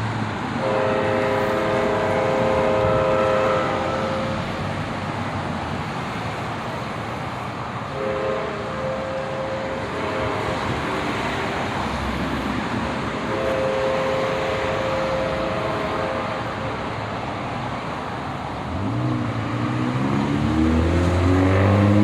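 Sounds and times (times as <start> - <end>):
train rumbling past: 0.0 - 22.0
locomotive horn chord: 0.6 - 4.6, 7.9 - 11.5, 13.0 - 17.0.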